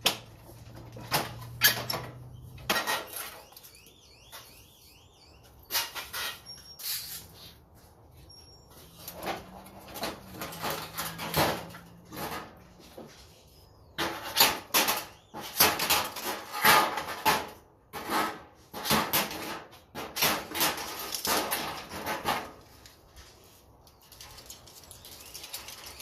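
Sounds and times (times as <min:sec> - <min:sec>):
metal parts clattering and scraping: 0:00.5 - 0:03.7, 0:05.6 - 0:07.5, 0:08.9 - 0:13.3, 0:14.0 - 0:23.0.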